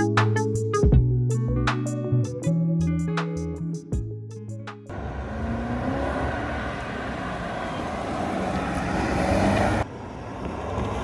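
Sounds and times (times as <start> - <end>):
road and wind noise: 4.9 - 11.0.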